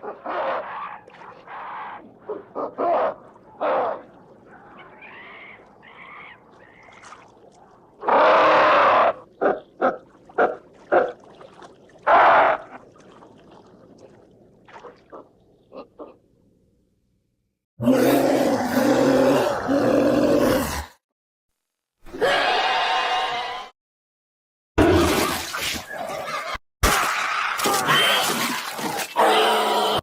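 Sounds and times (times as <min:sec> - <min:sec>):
creature grunts and barks: 0:17.8 - 0:21.0
loud screams: 0:22.1 - 0:23.7.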